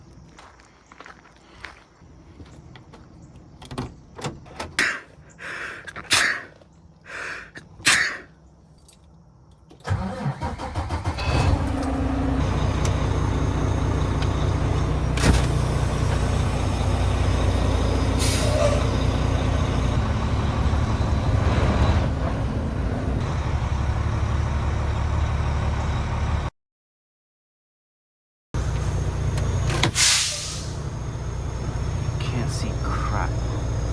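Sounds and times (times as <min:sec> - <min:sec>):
truck engine starting and idling: 0:09.7 - 0:26.5, 0:28.6 - 0:33.9.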